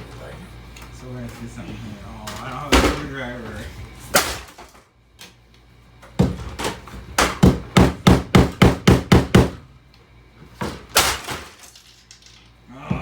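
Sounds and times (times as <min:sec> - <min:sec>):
hammer striking stereo: 0:07.2 - 0:09.6.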